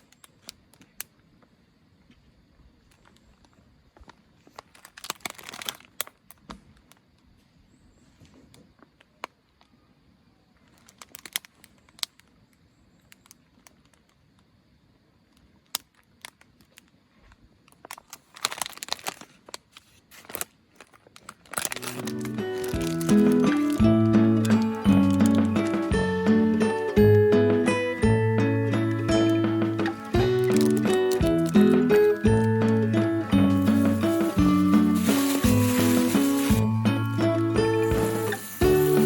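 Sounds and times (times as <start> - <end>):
material crinkling and rustling: 2.8 - 7.1, 10.6 - 12.4, 15.7 - 23.8, 29.8 - 32.1, 33.6 - 36.7
music: 21.7 - 39.0.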